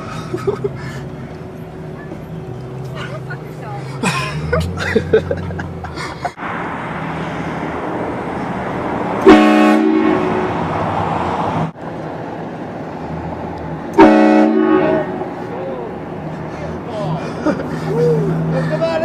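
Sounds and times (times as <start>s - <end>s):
train horn blast: 9.2s - 10.6s, 14.0s - 15.4s.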